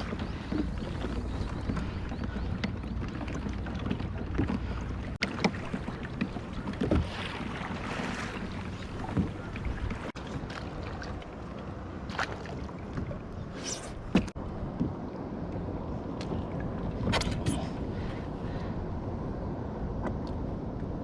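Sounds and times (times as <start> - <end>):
short knocks on hull: 0.0 - 10.6, 14.1 - 14.9
water lapping against hull: 0.0 - 15.0, 15.8 - 19.0.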